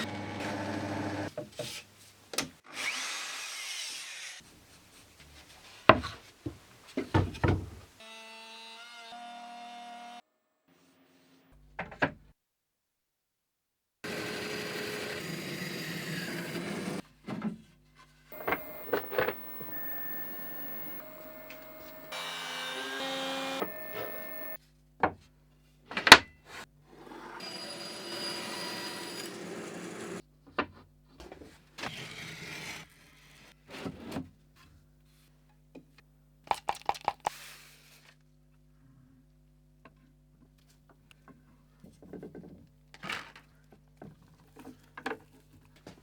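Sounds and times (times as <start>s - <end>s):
power tools on wood: 0.0s - 1.3s, 14.0s - 17.0s, 18.3s - 24.6s.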